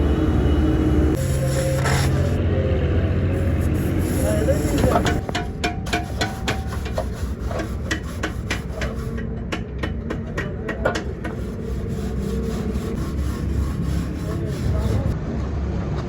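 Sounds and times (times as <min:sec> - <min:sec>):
steady low rumble: 0:00.0 - 0:16.0
hand scraping on radiator: 0:01.2 - 0:02.4, 0:03.4 - 0:09.2, 0:11.0 - 0:15.2.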